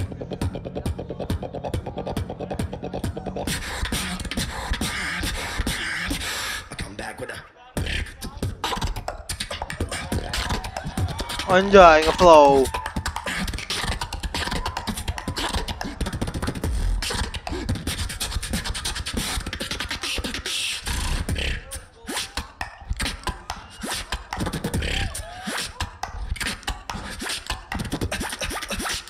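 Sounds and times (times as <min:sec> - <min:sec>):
person beatboxing: 0:00.0 - 0:29.0.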